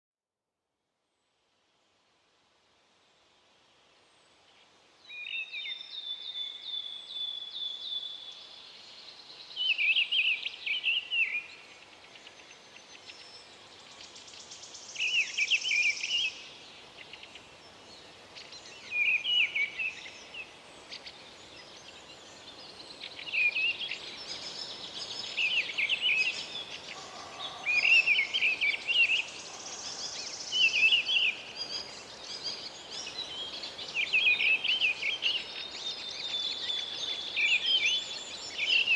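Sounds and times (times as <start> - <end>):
faint birds chirping: 4.4 - 38.9.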